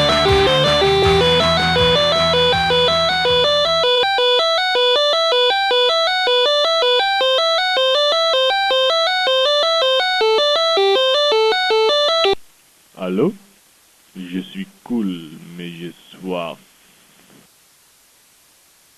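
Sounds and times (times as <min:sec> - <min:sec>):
low bass: 0:00.0 - 0:04.0
fast repeating bright notes: 0:00.0 - 0:12.2.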